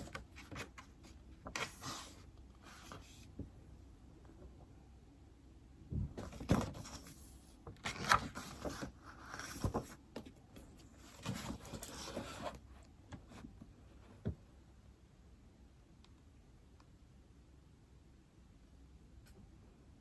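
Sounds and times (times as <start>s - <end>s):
objects rustling and sliding: 0.0s - 3.5s, 6.2s - 14.2s.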